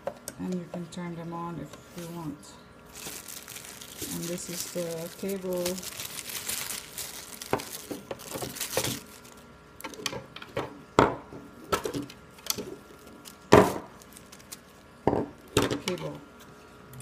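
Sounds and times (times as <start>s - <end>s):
packaging crinkling: 2.9s - 10.1s, 12.0s - 15.6s.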